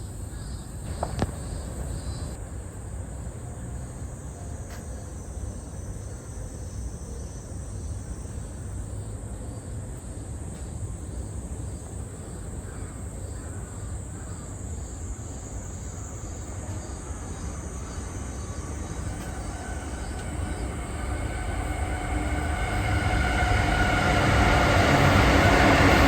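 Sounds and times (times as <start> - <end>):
low rumble: 19.1 - 26.0.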